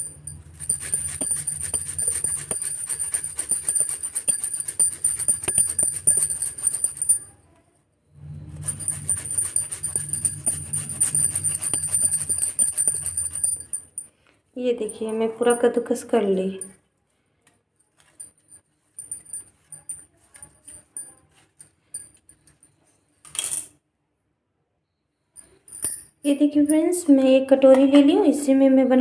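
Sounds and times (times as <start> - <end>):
ginger being grated: 0.0 - 7.2, 8.4 - 13.9.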